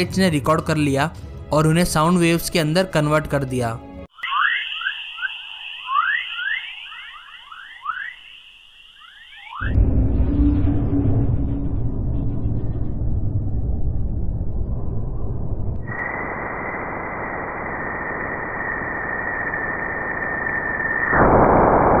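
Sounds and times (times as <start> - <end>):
hiss with steady high tone: 4.2 - 9.6, 15.8 - 22.0
dense low rumbling noise: 9.7 - 15.9.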